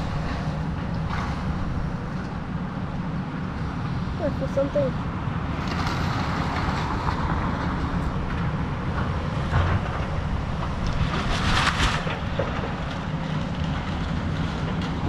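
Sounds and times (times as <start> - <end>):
excavator engine running: 0.0 - 5.6
demolition debris crunching: 6.6 - 15.0.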